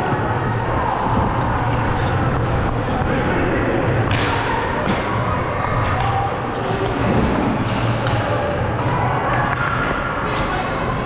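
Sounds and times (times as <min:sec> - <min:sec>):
steady background noise: 0:00.0 - 0:11.0
hockey sticks and ball clacking: 0:04.0 - 0:10.9.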